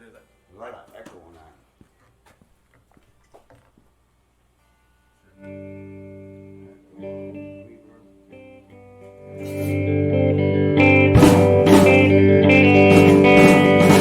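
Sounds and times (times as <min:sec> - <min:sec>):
guitar chords ringing: 0:04.6 - 0:14.0.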